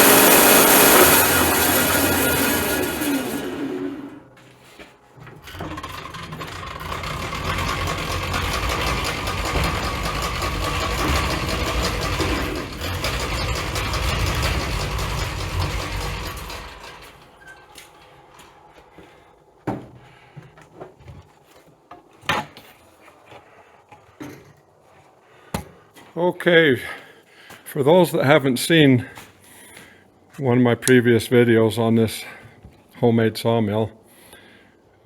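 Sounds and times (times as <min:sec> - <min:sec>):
bandsaw sawmill running: 0:00.0 - 0:04.5, 0:05.2 - 0:18.4.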